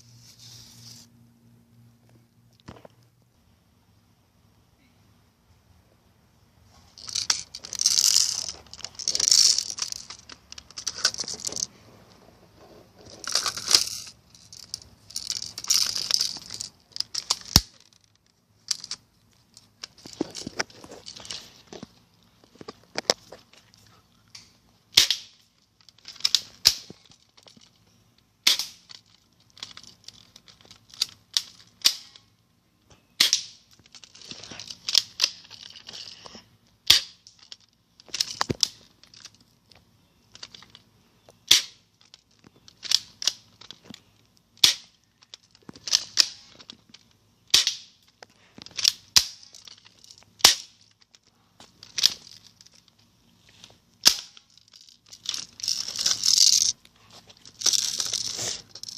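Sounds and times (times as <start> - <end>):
air gun cracks: 24.3 - 25.4, 28.4 - 29.0, 33.2 - 33.7, 47.5 - 50.8.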